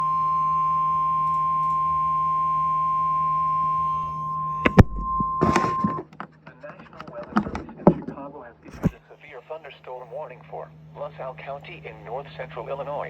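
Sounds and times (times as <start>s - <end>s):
steady alarm tone: 0.0s - 6.1s.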